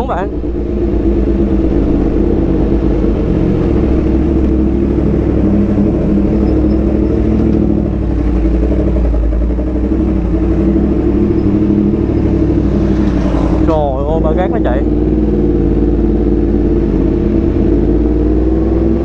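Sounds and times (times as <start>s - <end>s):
motorcycle engine running: 0.0s - 19.0s.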